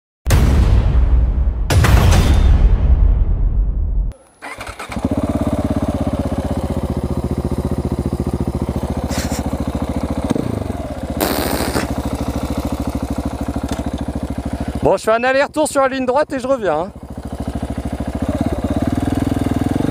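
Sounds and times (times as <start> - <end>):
loud booming: 0.3 - 4.1
motorcycle engine idling: 4.4 - 19.9.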